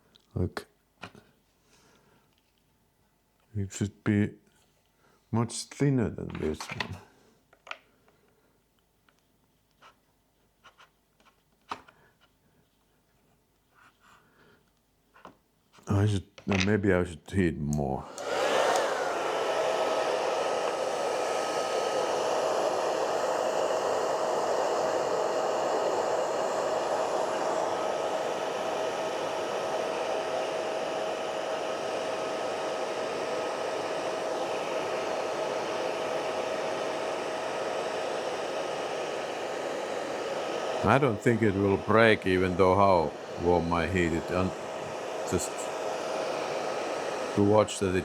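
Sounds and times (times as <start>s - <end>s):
hair dryer motor whine: 18.0s - 48.0s.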